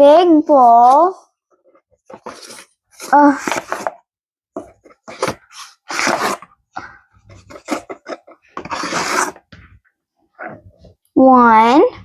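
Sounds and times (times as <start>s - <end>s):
measuring cup scraping flour: 7.5s - 9.4s.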